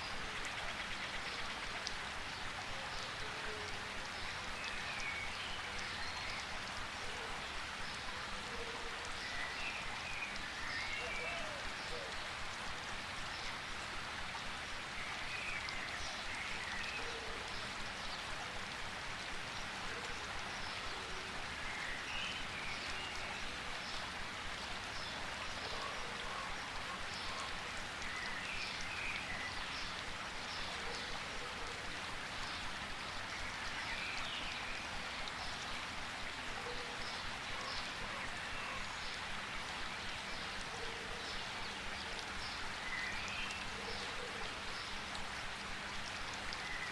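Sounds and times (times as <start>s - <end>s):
raindrops pattering: 0.0s - 21.8s
steady rain hiss: 0.0s - 46.9s.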